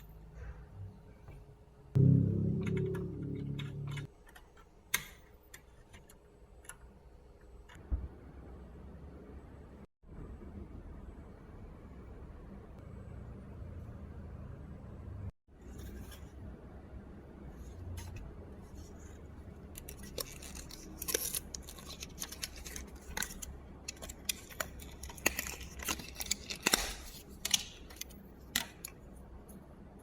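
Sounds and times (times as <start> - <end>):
low hum: 2.0 - 4.1.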